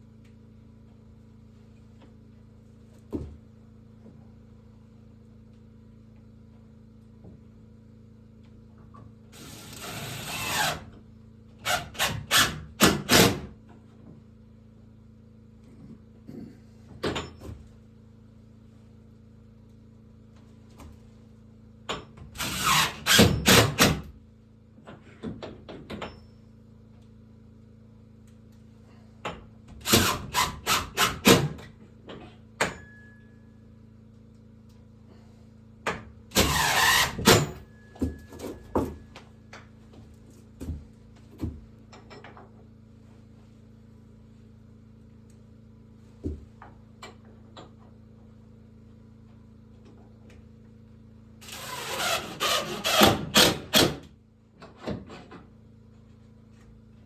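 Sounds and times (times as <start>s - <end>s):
power drill bursts: 36.3s - 37.5s, 51.4s - 54.0s.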